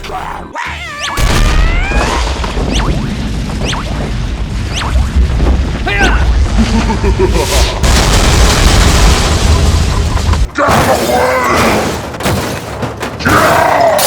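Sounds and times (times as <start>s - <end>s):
loud boom with low rumble: 1.2s - 10.5s.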